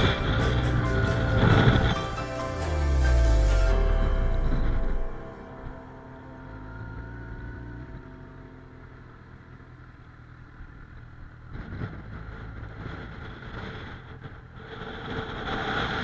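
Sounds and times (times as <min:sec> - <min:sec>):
wind buffeting microphone: 0:00.0 - 0:02.2
motorcycle engine running: 0:00.0 - 0:15.0.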